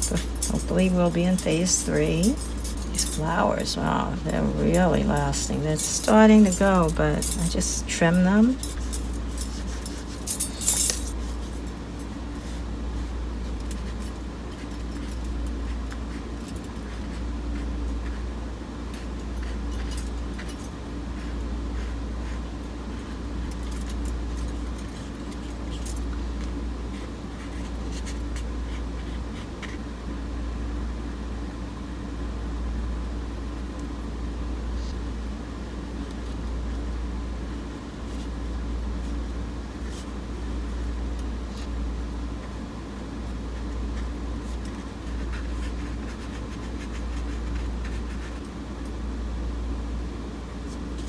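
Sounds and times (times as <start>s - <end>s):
small clinks: 0.0s - 12.6s, 18.9s - 20.7s, 22.7s - 26.2s
steady low hum: 0.0s - 51.0s.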